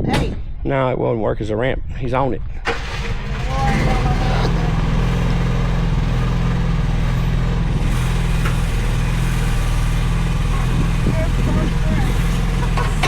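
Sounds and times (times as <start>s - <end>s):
small excavator engine running: 2.7s - 13.0s.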